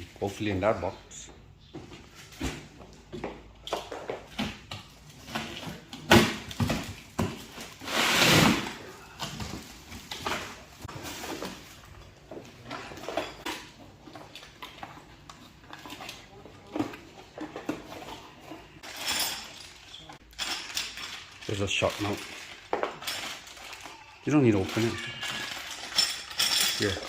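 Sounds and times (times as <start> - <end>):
metal parts clattering: 17.4 - 27.0.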